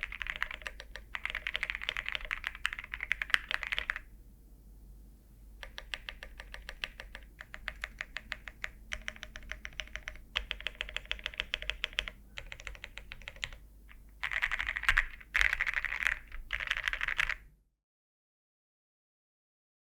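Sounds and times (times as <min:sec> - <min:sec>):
keyboard typing: 0:00.0 - 0:04.1, 0:05.6 - 0:17.4.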